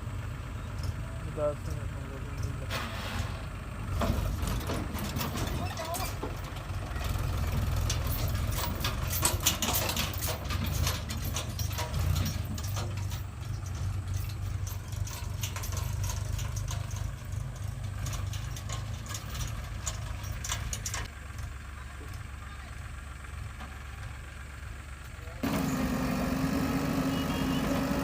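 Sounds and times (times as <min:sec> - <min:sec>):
diesel engine idling: 0:00.0 - 0:28.0
metallic clanks and rattles: 0:00.7 - 0:22.2.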